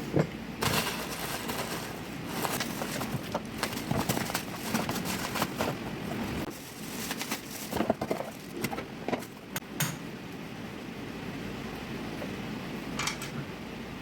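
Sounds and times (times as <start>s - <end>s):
objects being handled: 0.2s - 9.4s.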